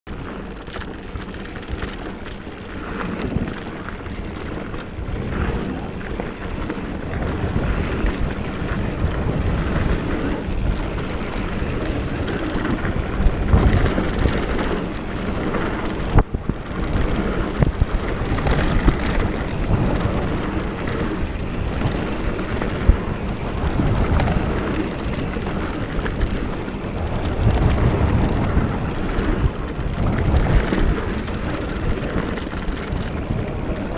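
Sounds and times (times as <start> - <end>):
tyres rumbling on dirt: 0.1 - 33.9
wind buffeting microphone: 0.1 - 33.9.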